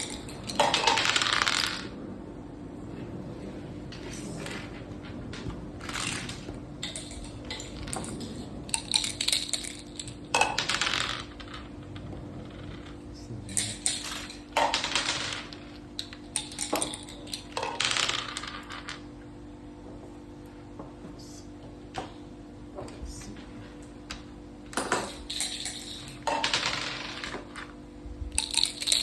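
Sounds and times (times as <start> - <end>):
dice clattering on a board: 0.0 - 1.9, 3.9 - 19.0, 24.1 - 29.0.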